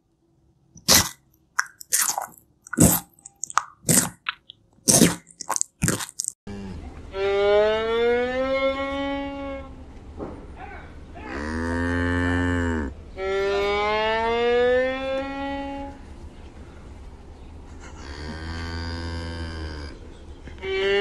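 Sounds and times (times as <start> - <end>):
animal mooing calls: 11.2 - 16.0, 18.0 - 20.0.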